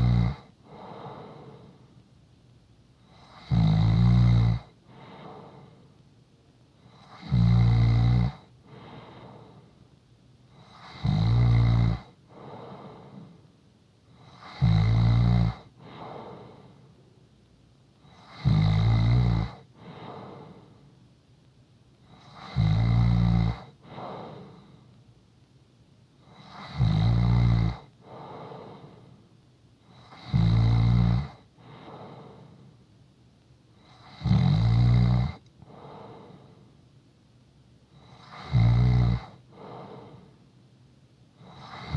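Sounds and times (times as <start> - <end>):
soft breath out: 0.6 - 2.0, 4.8 - 6.0, 8.6 - 9.9, 12.3 - 13.5, 15.8 - 17.2, 19.8 - 21.0, 23.8 - 25.0, 28.0 - 29.3, 31.6 - 32.8, 35.6 - 36.8, 39.5 - 40.5
person snoring: 3.1 - 5.5, 10.6 - 13.2, 14.2 - 16.6, 18.1 - 20.6, 22.2 - 24.6, 26.4 - 28.8, 30.0 - 32.4, 33.9 - 36.4, 38.1 - 40.3, 41.4 - 41.9.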